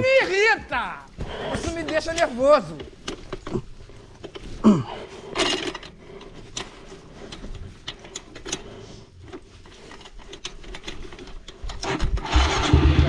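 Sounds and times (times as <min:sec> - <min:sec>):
metal chain clicking and rattling: 0:05.2 - 0:11.8.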